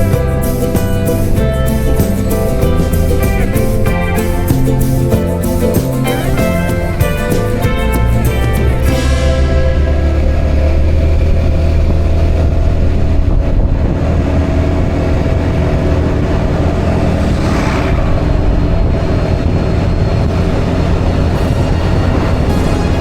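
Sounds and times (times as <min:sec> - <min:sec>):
road noise: 0:00.0 - 0:23.0
scooter engine droning: 0:08.8 - 0:23.0.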